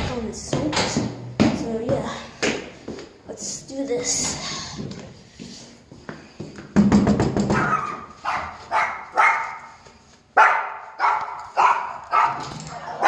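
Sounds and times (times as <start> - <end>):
dog barking: 7.5 - 9.8, 10.4 - 13.0.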